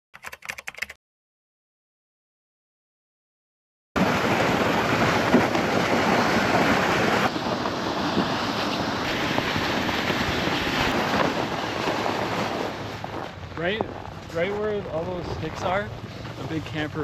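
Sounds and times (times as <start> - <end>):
wind buffeting microphone: 4.0 - 16.4.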